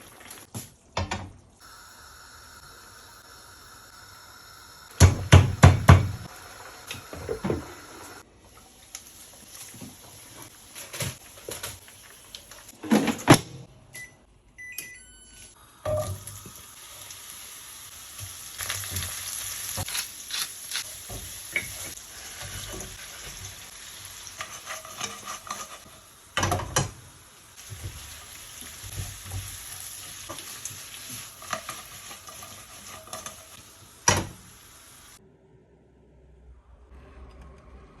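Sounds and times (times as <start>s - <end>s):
meat sizzling in hot oil: 15.6s - 35.2s.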